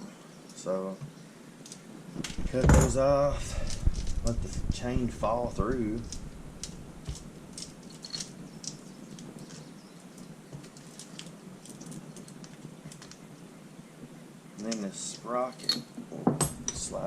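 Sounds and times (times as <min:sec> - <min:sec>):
metal chain rattling: 0:06.0 - 0:08.4.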